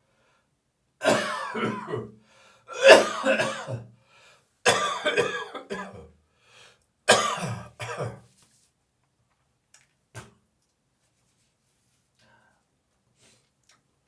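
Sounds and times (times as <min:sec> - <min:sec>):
person coughing: 0:01.0 - 0:02.1, 0:02.7 - 0:03.8, 0:04.7 - 0:06.1, 0:07.1 - 0:08.2.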